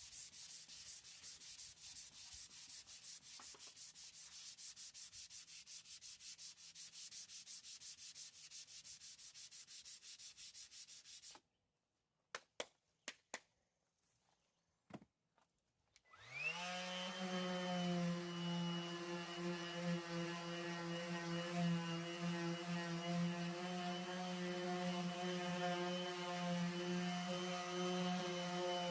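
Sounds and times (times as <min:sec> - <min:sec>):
rhythmic sanding strokes: 0:00.0 - 0:11.3, 0:16.6 - 0:28.9
power tool motor whining: 0:16.1 - 0:17.4.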